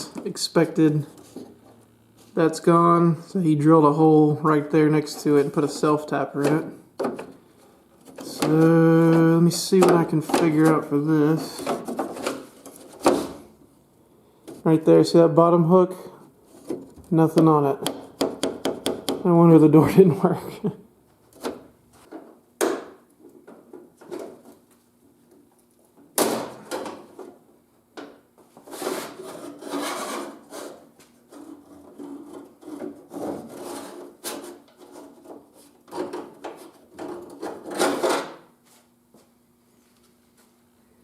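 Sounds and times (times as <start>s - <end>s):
metal scraping and rubbing: 28.6s - 38.1s.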